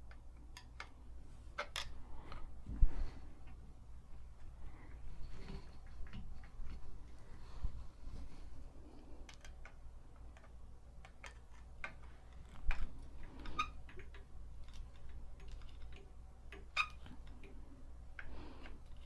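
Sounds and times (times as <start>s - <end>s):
small parts clicking and tapping: 0.0s - 1.0s, 9.2s - 19.0s.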